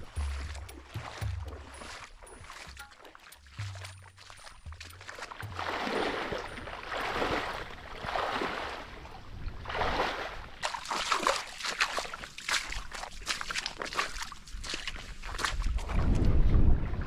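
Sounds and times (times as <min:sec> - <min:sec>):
wet mud crackling and popping: 0:00.0 - 0:05.7, 0:10.6 - 0:16.7
wading water sloshing: 0:00.0 - 0:16.4.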